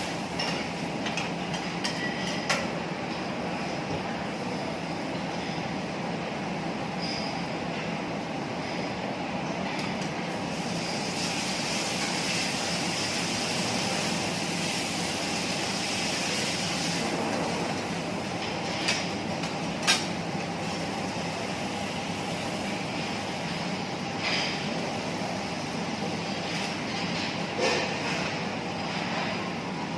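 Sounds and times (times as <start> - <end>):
food sizzling on griddle: 10.5 - 18.9.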